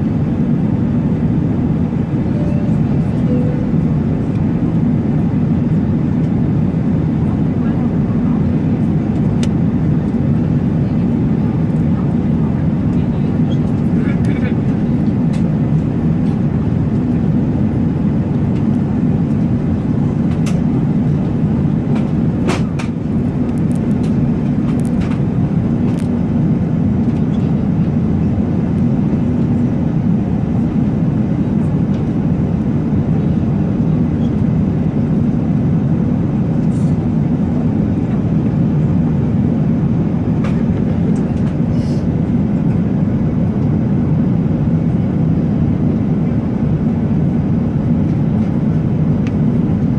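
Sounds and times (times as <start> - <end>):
airliner low rumble: 0.0 - 49.9.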